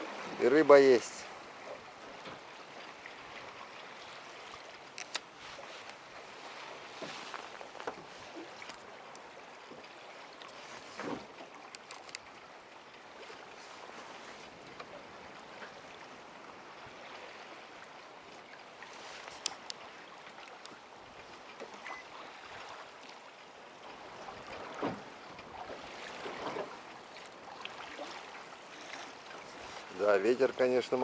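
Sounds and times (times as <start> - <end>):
water lapping around boat: 0.0 - 31.0
wind: 0.0 - 31.0
light clicks: 4.8 - 6.0, 11.7 - 12.3, 19.2 - 19.8.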